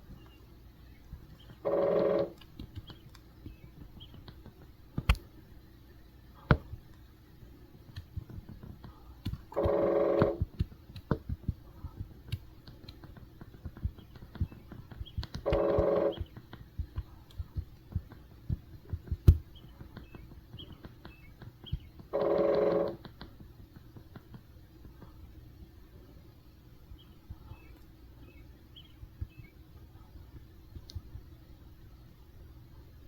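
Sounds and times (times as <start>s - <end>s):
woodpecker drumming: 1.1s - 5.2s, 7.7s - 25.0s
light taps: 7.8s - 15.5s.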